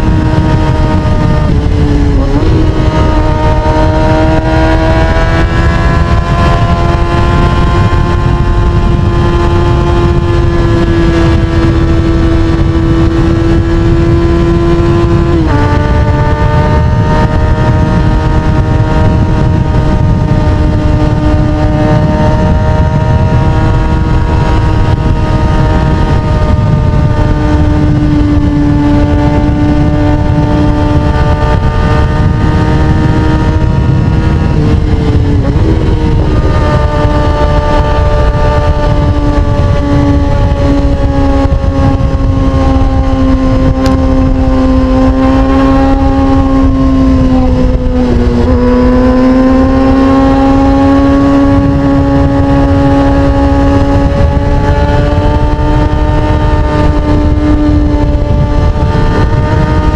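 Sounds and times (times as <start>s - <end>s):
motorcycle engine at high revs: 0.0s - 59.9s
wind rush: 0.0s - 59.9s.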